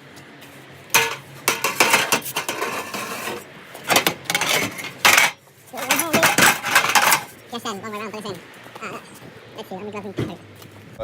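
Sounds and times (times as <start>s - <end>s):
metal objects clanking: 0.9s - 7.3s.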